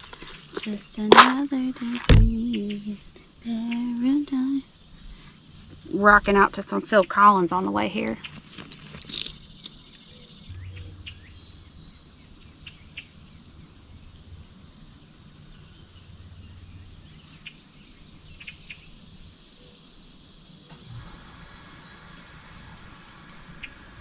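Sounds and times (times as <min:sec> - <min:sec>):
high insect drone: 0:00.0 - 0:24.0
low rumble: 0:10.4 - 0:18.3.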